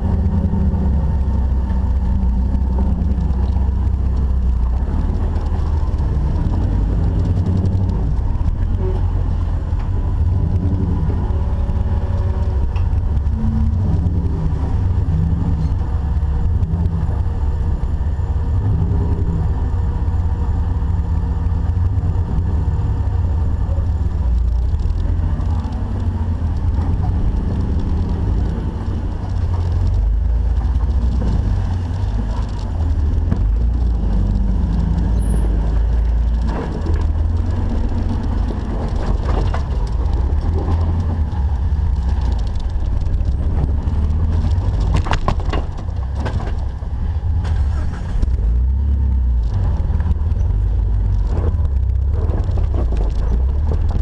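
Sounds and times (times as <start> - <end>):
vehicle engine running: 0.0 - 54.0.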